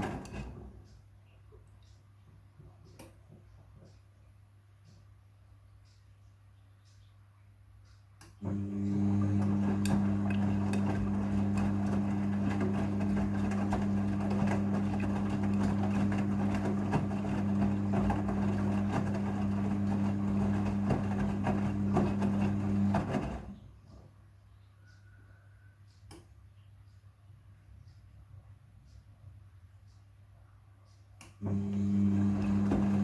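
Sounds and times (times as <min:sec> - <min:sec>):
washing machine pump hum: 0:00.0 - 0:01.8, 0:08.4 - 0:24.0, 0:31.4 - 0:33.0.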